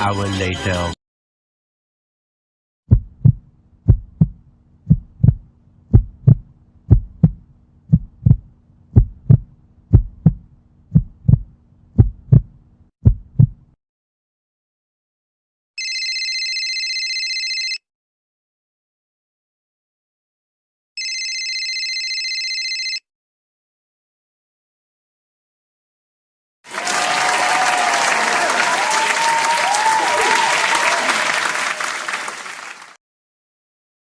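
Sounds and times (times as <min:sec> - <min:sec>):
heartbeat thumps: 0:02.9 - 0:13.8
electronic ringing tone: 0:15.8 - 0:17.8, 0:21.0 - 0:23.0.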